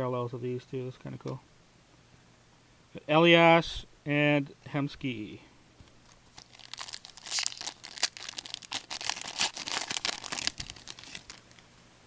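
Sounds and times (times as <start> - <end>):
wrapper crinkling and tearing: 6.0 - 11.6.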